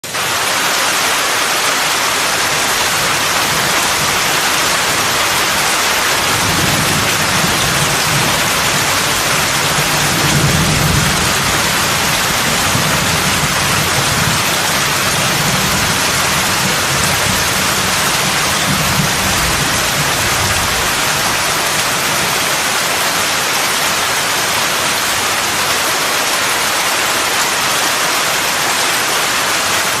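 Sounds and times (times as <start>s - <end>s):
heavy rain pouring: 0.0s - 30.0s
distant thunder rumble: 2.6s - 22.5s.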